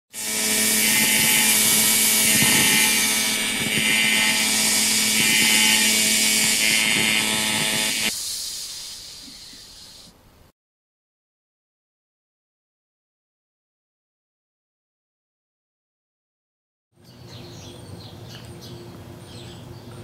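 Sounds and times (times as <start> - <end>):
angle grinder whining: 0.1 - 8.2.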